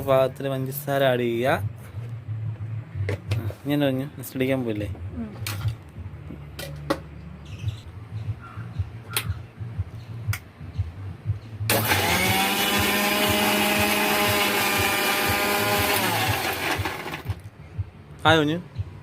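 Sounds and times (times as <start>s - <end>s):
mixer grinder motor whining: 11.7s - 17.4s.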